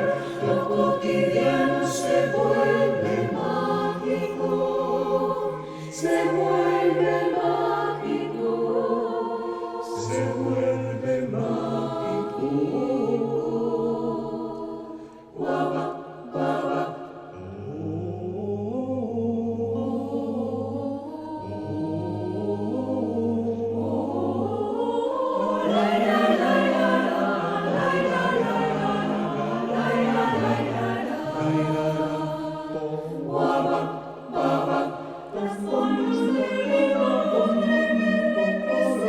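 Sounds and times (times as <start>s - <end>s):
choir singing in harmony: 0.0s - 39.0s.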